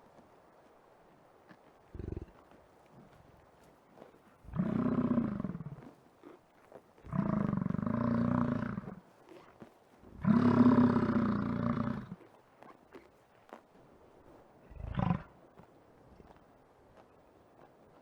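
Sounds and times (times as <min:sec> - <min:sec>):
bison bellowing: 0:04.5 - 0:05.8, 0:10.2 - 0:12.2.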